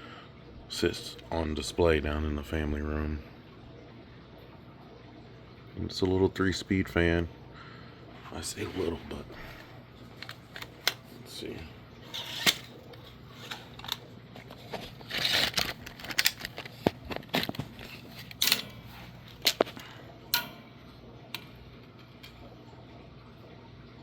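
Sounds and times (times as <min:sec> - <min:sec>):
faint steady hum: 0:00.0 - 0:24.0
handling clicks and knocks: 0:12.4 - 0:20.5.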